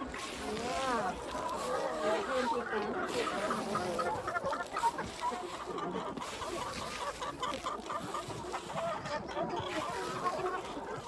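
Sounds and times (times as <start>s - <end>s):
chickens clucking: 0.0s - 11.0s.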